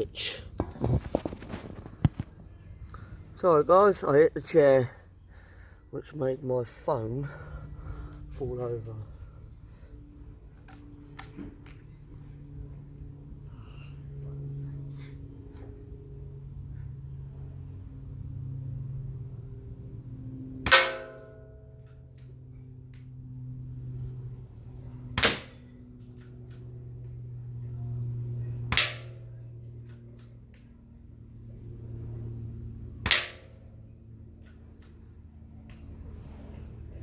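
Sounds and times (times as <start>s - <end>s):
air rifle shots: 20.6s - 21.2s, 25.2s - 25.7s, 28.7s - 29.2s, 33.0s - 33.6s.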